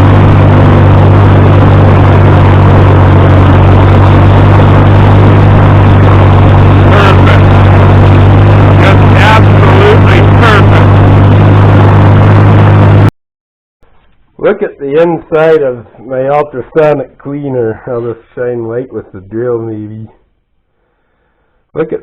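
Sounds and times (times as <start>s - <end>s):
tractor engine running steadily: 0.0s - 13.1s.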